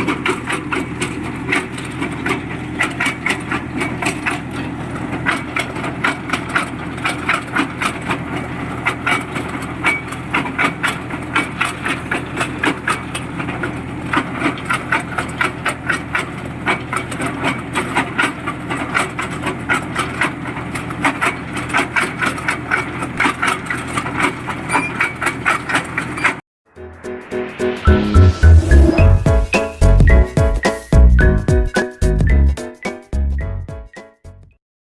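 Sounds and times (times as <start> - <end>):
drilling rig engine drone: 26.8 - 31.3.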